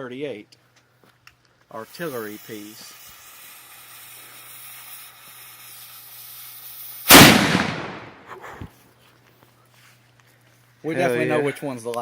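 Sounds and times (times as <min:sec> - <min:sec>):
fuse hissing: 0:01.8 - 0:08.1
cannon blast: 0:07.1 - 0:08.3.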